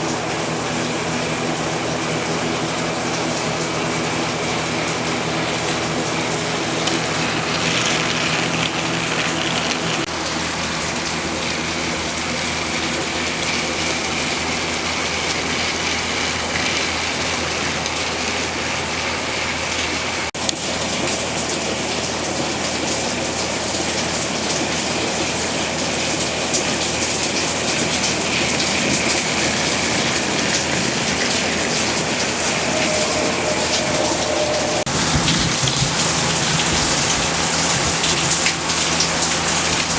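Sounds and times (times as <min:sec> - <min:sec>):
rain on a shed roof: 0:00.0 - 0:39.9
toy train motor humming: 0:04.7 - 0:20.0, 0:26.2 - 0:39.9.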